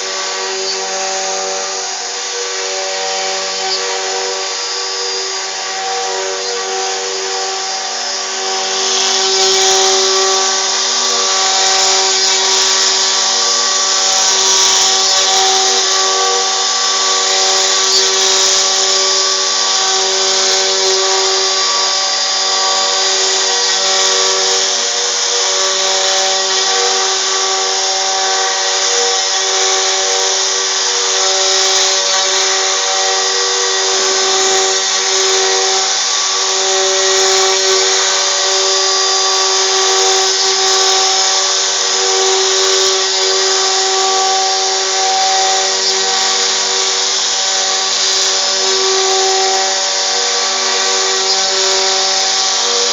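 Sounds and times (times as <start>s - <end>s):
hissing cutting noise: 0.0s - 52.9s
router spindle whine: 0.0s - 52.9s.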